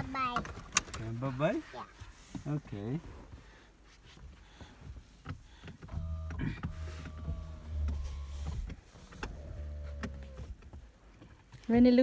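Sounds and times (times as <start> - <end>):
power window motor whine: 5.8 - 10.6.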